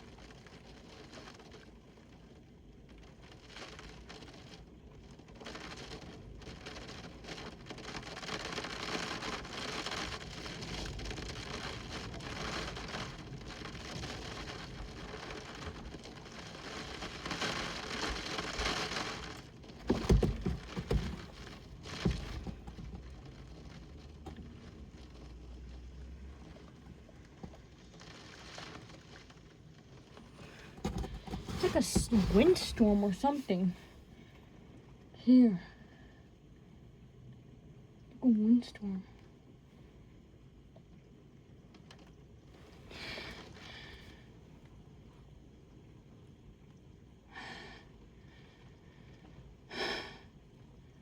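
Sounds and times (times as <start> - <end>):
falling precipitation: 2.9 - 29.5, 30.1 - 34.0.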